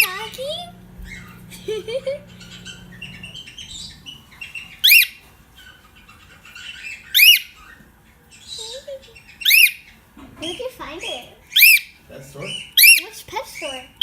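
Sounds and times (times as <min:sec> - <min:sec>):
bird soft chirping: 0:00.0 - 0:10.7
bird sharp calls: 0:02.2 - 0:10.7, 0:11.4 - 0:14.0.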